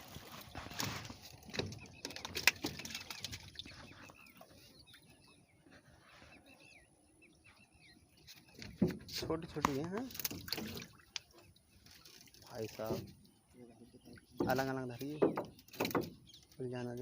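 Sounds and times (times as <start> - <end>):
sharp knocks: 14.4 - 16.2.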